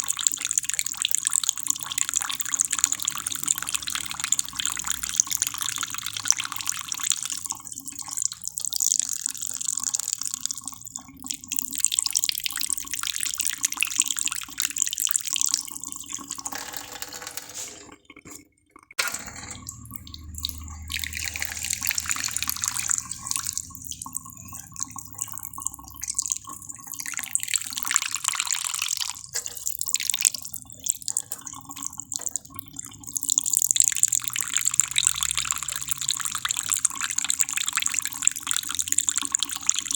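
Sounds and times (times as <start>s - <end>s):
running water splashing: 19.6s - 27.1s.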